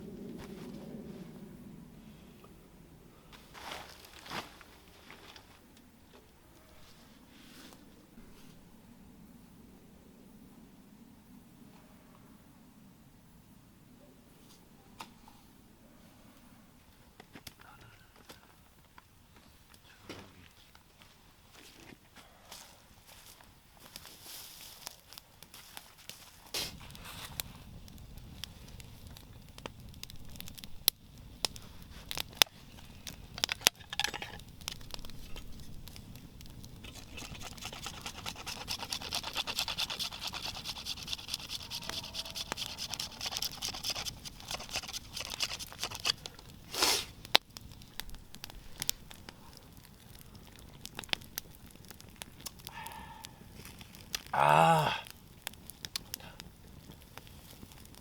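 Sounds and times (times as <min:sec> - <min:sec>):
branches and dry leaves rustling: 0:03.3 - 0:08.7, 0:20.4 - 0:54.4, 0:55.1 - 0:58.0.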